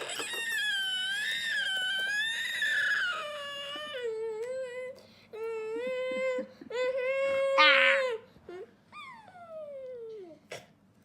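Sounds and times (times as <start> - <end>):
high-pitched whining cry: 0.0 - 4.7, 5.5 - 8.3.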